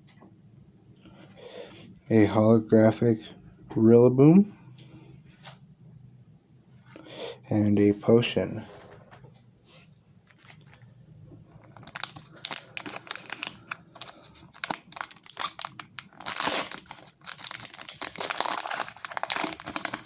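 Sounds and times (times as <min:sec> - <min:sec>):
foil wrapper crinkling and tearing: 0:10.3 - 0:10.8, 0:11.5 - 0:20.0.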